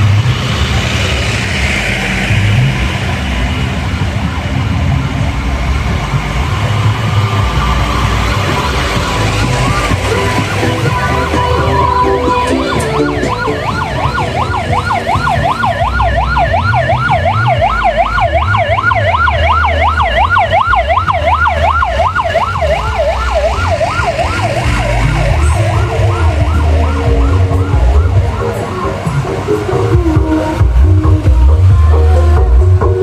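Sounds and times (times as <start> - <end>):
heavy bass from sound system: 0.0 - 33.0
fast yelping siren: 8.6 - 30.4.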